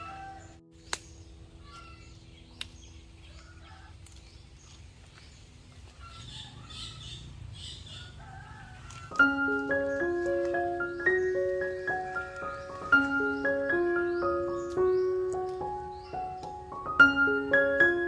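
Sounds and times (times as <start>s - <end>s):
birds chirping: 0.0s - 18.0s.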